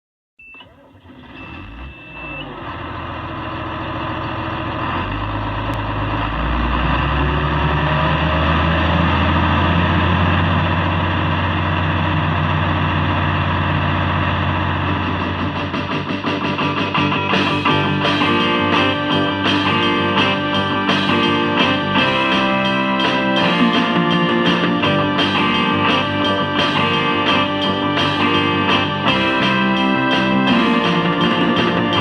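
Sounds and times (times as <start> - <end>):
heavy machine engine running: 1.0 - 32.0
high electronic beep: 1.4 - 2.5.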